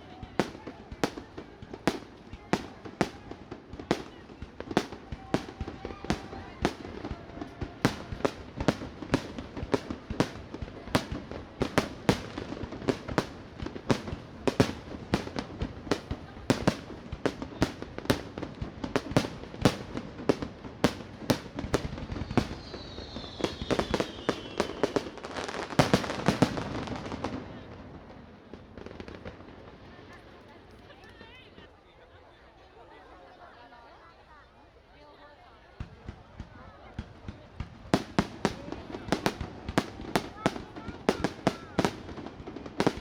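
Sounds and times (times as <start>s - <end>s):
fireworks bangs: 0.0s - 31.6s, 35.7s - 43.0s
fireworks crackle: 0.0s - 31.7s, 35.8s - 43.0s
fireworks falling whistles: 18.9s - 27.5s.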